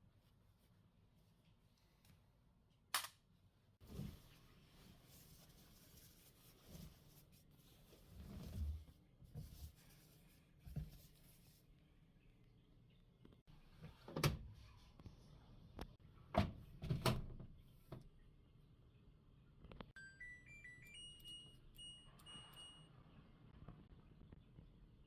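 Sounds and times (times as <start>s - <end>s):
appliance electronic chime: 20.0s - 23.0s.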